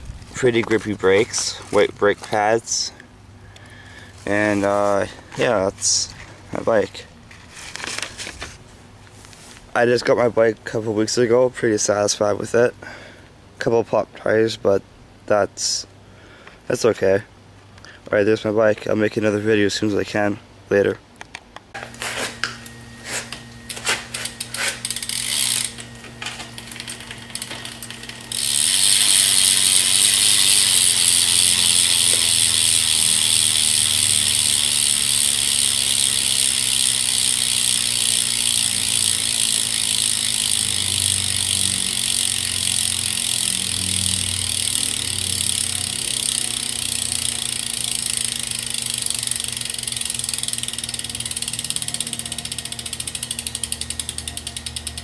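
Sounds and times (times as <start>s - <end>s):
bicycle hub freewheeling clicks: 23.7s - 55.0s.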